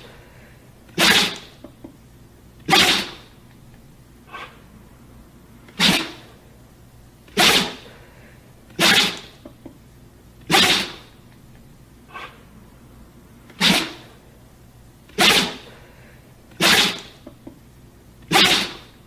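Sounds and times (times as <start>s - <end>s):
dog sneezing: 0.9s - 1.6s, 2.6s - 3.4s, 4.3s - 4.6s, 5.7s - 6.4s, 7.3s - 9.4s, 10.4s - 11.2s, 12.1s - 12.4s, 13.5s - 14.2s, 15.1s - 17.2s, 18.3s - 19.0s.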